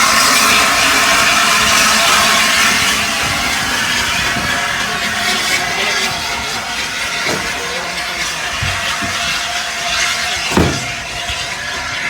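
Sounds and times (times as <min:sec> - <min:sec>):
steam hissing: 0:00.0 - 0:12.0
knocks: 0:10.5 - 0:11.5.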